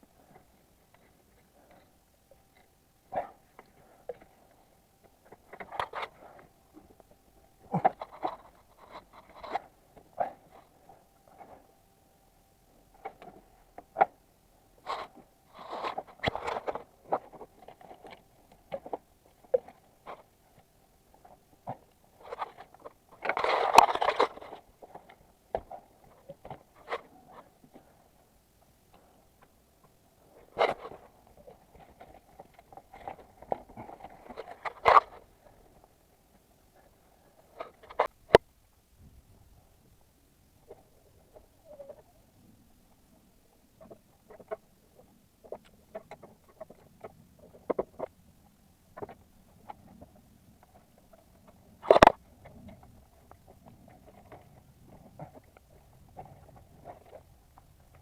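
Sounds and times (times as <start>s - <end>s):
rustling: 0.0s - 11.8s, 14.8s - 38.4s
faint steady hum: 0.0s - 58.0s.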